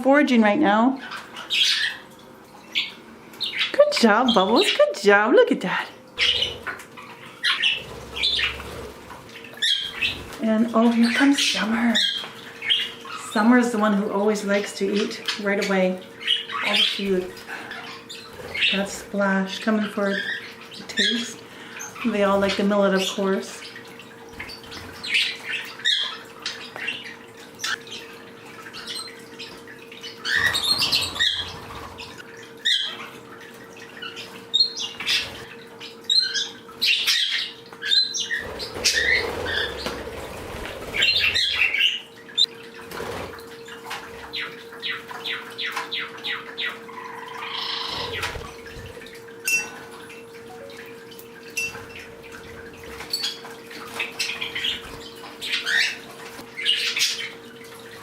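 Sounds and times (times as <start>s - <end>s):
small birds chirping and squawking: 0.4s - 58.0s.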